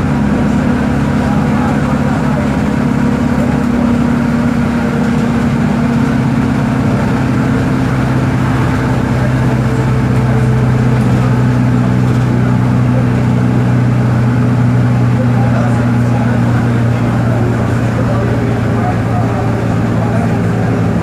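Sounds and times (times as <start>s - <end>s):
diesel bus engine droning: 0.0s - 21.0s.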